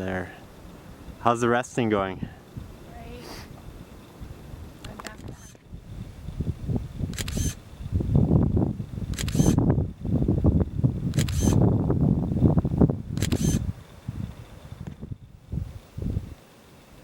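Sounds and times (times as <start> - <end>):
wind buffeting microphone: 0.0 - 17.0
short high rustle: 3.1 - 3.6.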